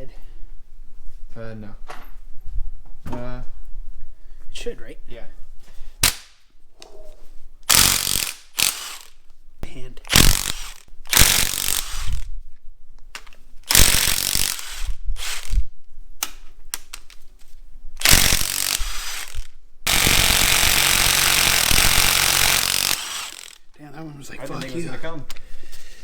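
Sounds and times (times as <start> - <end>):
power wrench running: 7.7 - 9.1, 10.1 - 12.3, 13.7 - 15.6, 18.0 - 23.7.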